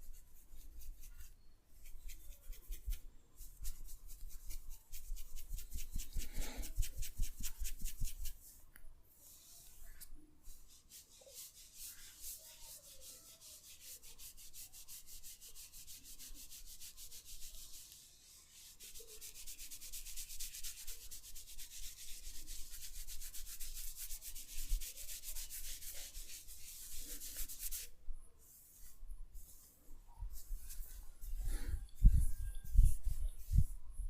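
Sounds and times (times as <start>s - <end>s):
hands rubbing head: 0.0s - 8.5s, 9.2s - 27.9s, 28.7s - 33.8s.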